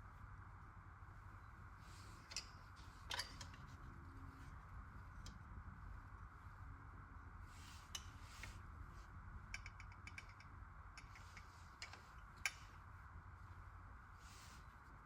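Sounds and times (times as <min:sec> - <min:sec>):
small parts clicking and tapping: 0:02.2 - 0:03.8, 0:09.5 - 0:12.8.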